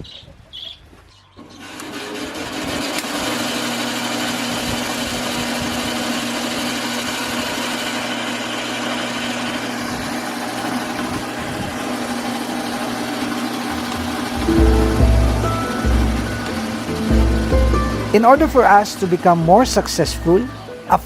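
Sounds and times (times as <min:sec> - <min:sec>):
small engine running: 0:01.4 - 0:21.0.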